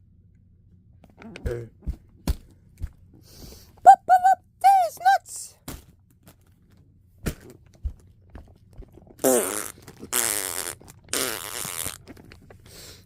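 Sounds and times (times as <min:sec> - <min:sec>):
fart sounds: 0:09.2 - 0:12.2.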